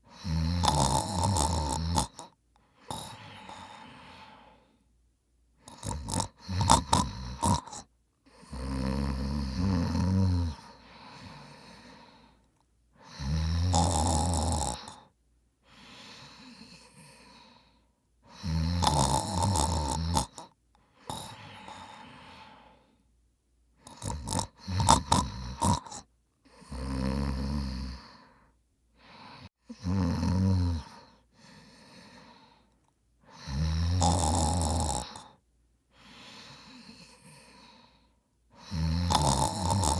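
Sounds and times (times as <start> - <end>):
quiet breaths: 0.0 - 39.9
man snoring loudly: 0.1 - 4.5, 5.7 - 12.0, 13.0 - 15.1, 18.3 - 20.5, 21.1 - 22.6, 23.8 - 28.2, 29.7 - 31.1, 33.3 - 35.4, 38.6 - 39.9
sharp snorting: 0.2 - 2.3, 5.7 - 7.9, 18.4 - 20.5, 23.8 - 26.1, 38.6 - 39.9.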